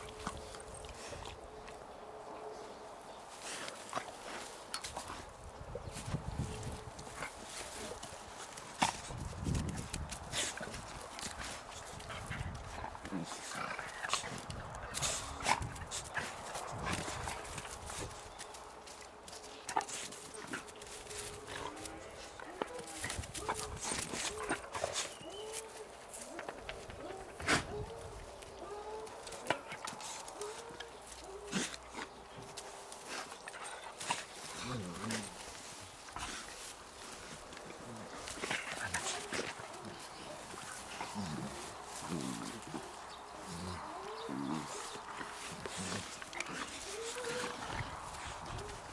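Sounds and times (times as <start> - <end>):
dog whining: 46.5 - 48.8.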